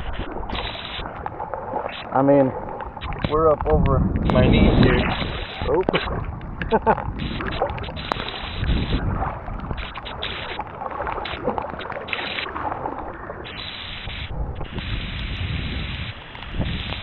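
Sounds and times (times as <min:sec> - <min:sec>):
water sloshing around legs: 0:00.0 - 0:14.8.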